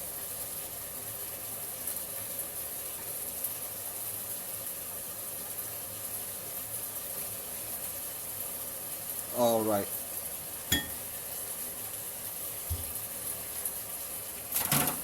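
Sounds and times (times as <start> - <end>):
chicken sizzling in a pan: 0.0 - 15.0.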